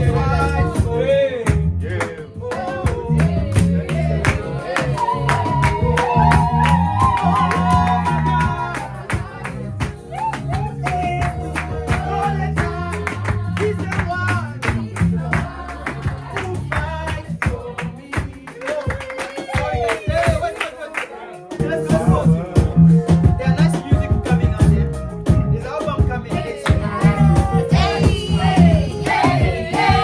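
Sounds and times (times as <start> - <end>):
song with beat and vocals: 0.0 - 30.0.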